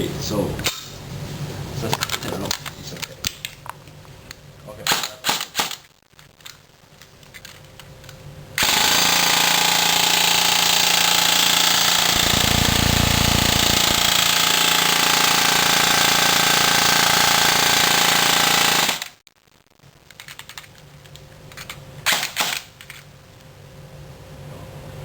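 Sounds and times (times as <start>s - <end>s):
electric gun gearbox buzzing: 11.6s - 19.1s.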